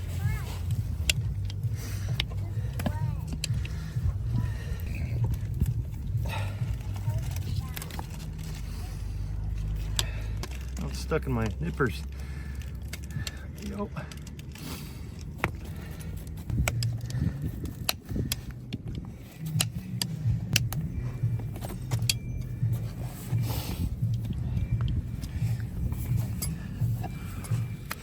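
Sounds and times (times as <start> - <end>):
low steady rumble: 0.0 - 28.0
metal hand tools clinking: 19.3 - 28.0.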